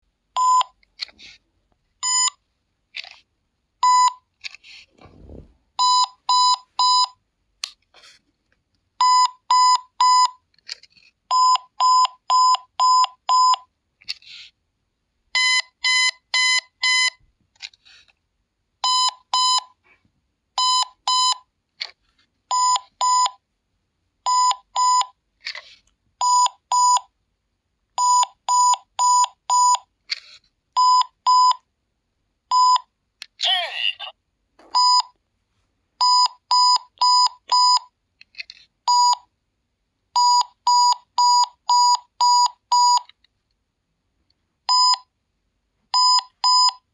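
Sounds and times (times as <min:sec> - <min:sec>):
toy electronic beeps: 0:02.0 - 0:02.4, 0:15.4 - 0:17.2, 0:24.3 - 0:25.1, 0:36.0 - 0:37.9, 0:44.7 - 0:45.1, 0:46.0 - 0:46.8
scratchy handling noises: 0:04.4 - 0:05.5, 0:10.5 - 0:11.2, 0:17.4 - 0:18.3, 0:25.4 - 0:26.0, 0:30.0 - 0:30.6.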